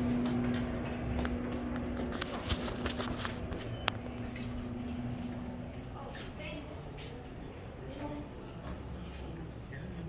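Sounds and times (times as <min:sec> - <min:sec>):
footsteps on a hard floor: 0:00.0 - 0:07.3
steady low hum: 0:00.0 - 0:10.0.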